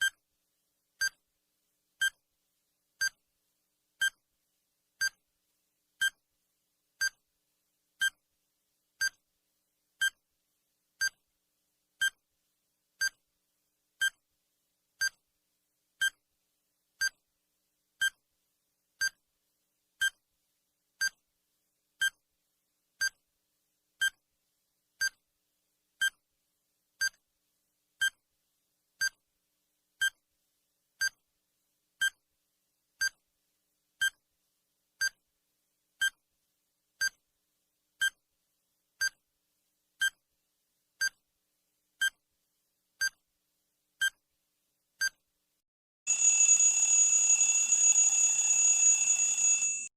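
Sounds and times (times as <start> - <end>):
short electronic beeps: 46.1 - 49.9.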